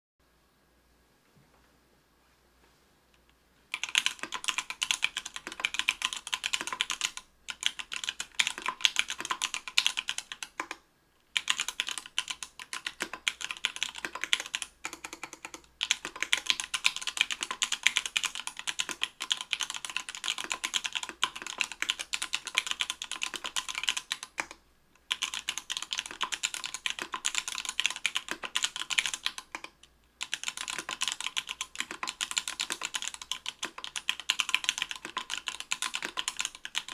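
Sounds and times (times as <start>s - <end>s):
typing on mechanical keyboard: 3.7s - 36.9s.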